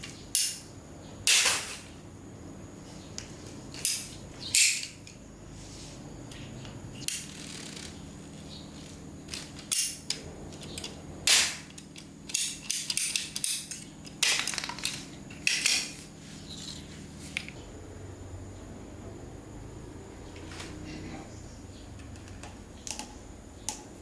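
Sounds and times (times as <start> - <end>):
steady low hum: 0.0 - 24.0
metal tools clinking and scraping: 3.7 - 5.2, 11.7 - 17.6.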